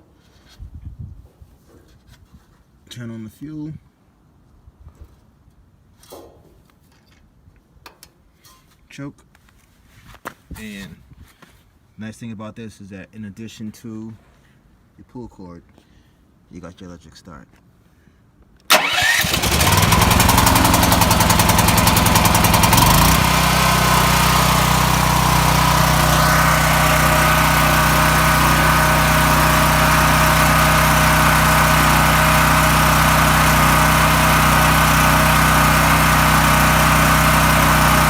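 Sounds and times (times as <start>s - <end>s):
generator engine starting and running: 18.7s - 38.0s.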